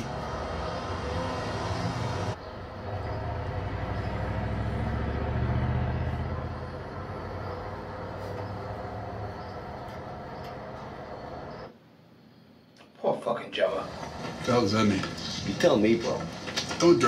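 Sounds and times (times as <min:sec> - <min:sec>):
vehicle engine rumbling: 0:00.0 - 0:11.7.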